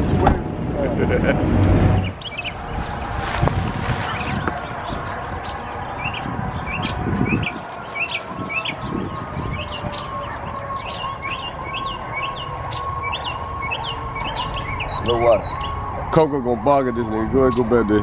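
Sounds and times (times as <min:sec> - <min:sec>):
low rumble: 0:00.0 - 0:05.4
bird chirping: 0:02.0 - 0:15.9.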